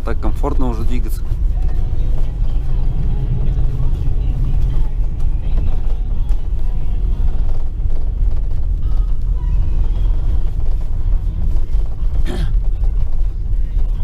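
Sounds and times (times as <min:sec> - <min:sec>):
car road and engine rumble: 0:00.0 - 0:14.0.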